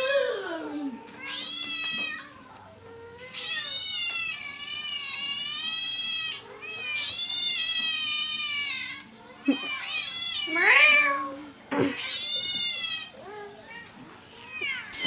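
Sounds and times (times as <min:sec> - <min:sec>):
cat meowing: 0:00.0 - 0:15.0.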